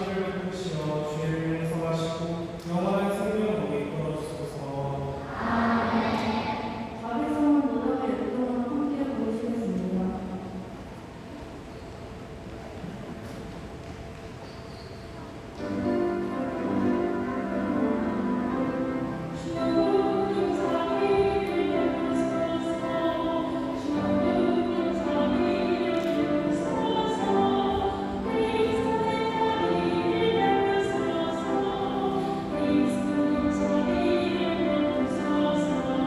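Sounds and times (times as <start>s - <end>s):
choir and congregation singing hymn: 5.2s - 7.1s, 18.7s - 36.0s.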